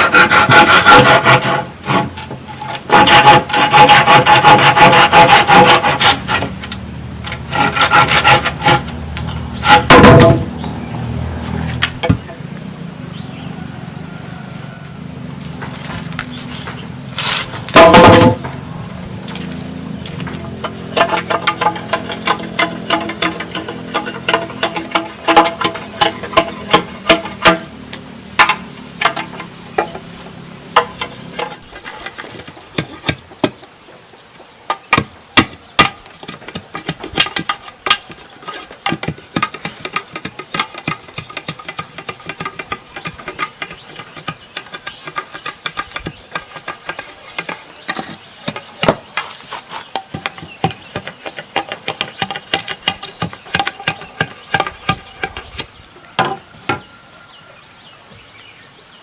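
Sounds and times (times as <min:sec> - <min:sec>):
hand tools knocking on bamboo: 0:00.0 - 0:10.6, 0:17.7 - 0:18.6, 0:20.0 - 0:30.1, 0:30.8 - 0:33.7, 0:34.7 - 0:55.6.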